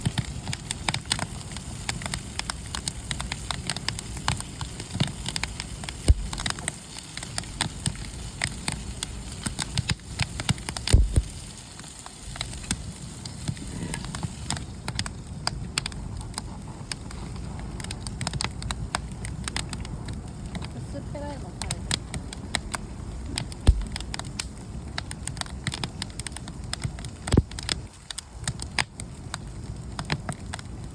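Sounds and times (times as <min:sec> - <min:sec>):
wood fire crackling: 0:00.0 - 0:30.9
dull thumps: 0:06.1 - 0:06.6, 0:10.9 - 0:11.4, 0:23.6 - 0:24.2.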